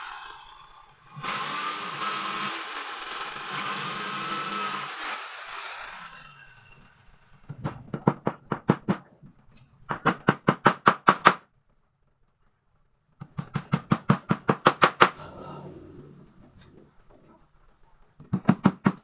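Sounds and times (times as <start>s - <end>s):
hammer striking wood: 7.5s - 9.1s, 9.9s - 11.4s, 13.2s - 15.2s, 18.3s - 19.0s.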